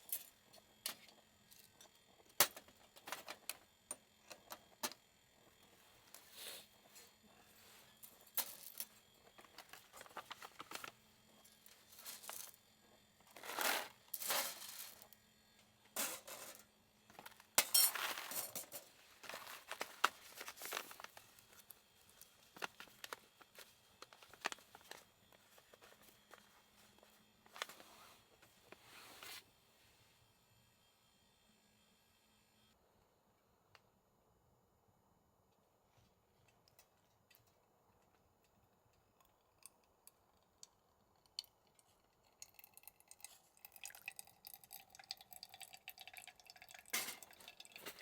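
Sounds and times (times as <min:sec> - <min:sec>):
rustling and crinkling: 0:05.6 - 0:12.6, 0:16.4 - 0:29.4.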